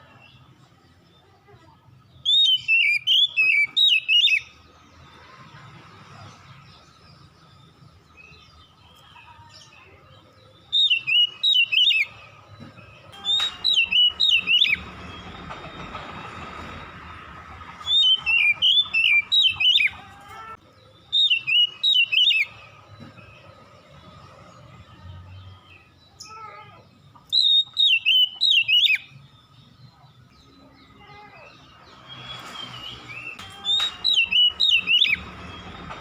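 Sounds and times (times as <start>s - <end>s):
bird singing whistled notes: 2.1s - 4.7s, 10.4s - 15.9s, 17.8s - 20.0s, 20.8s - 23.6s, 27.2s - 36.0s.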